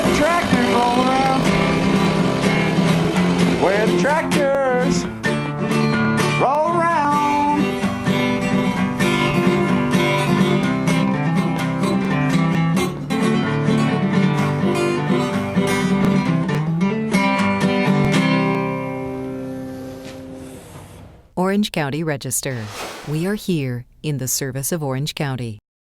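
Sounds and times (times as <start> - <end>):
country acoustic guitar music: 0.0 - 20.7.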